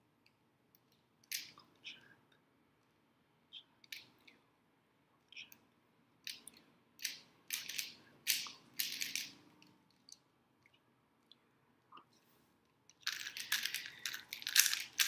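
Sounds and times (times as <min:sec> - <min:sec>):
puzzle cubes clacking: 0:13.0 - 0:15.0.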